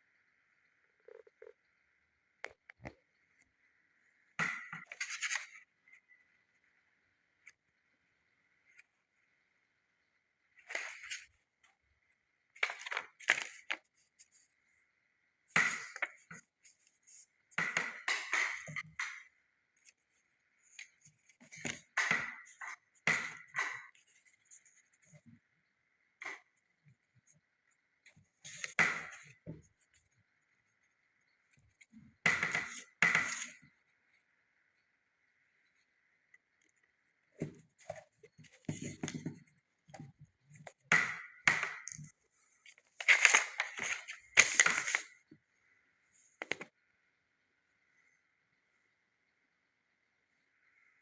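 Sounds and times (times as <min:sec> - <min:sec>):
packaging rustling: 0:42.9 - 0:45.1.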